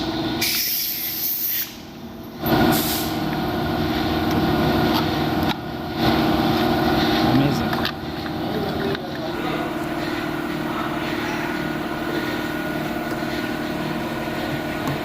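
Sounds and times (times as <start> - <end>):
mechanical hum with hiss: 0.0 - 15.0
short hissing bursts of air: 0.4 - 1.9, 2.7 - 3.2.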